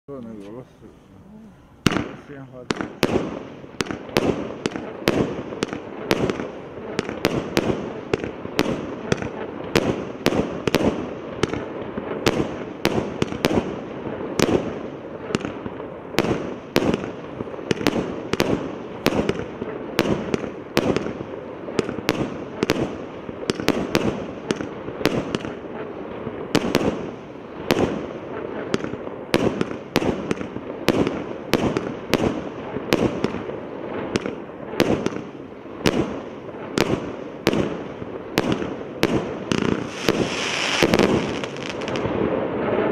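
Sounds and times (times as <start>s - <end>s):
firework bursts: 0.5s - 42.9s
firework battery bangs: 36.8s - 42.9s.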